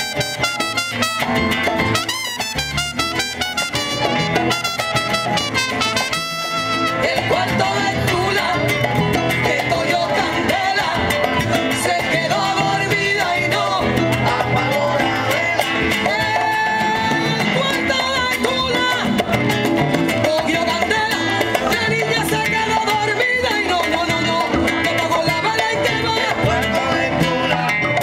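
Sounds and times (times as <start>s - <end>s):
bass: 0.0s - 28.0s
congas: 0.0s - 28.0s
guitar: 0.0s - 28.0s
person singing: 6.8s - 19.1s.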